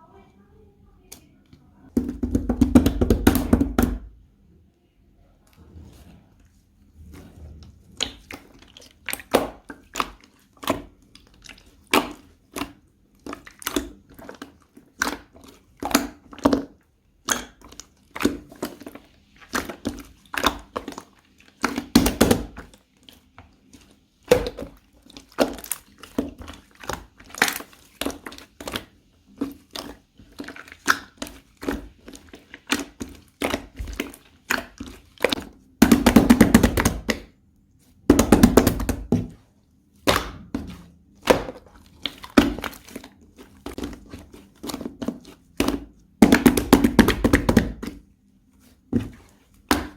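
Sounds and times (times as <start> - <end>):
slime squishing and popping: 8.0 - 37.4, 40.0 - 48.1, 49.0 - 49.9.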